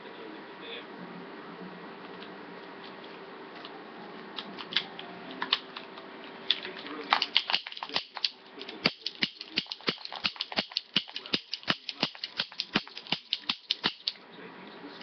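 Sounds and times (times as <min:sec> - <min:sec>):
toy cap gun clicking: 0:07.1 - 0:14.2.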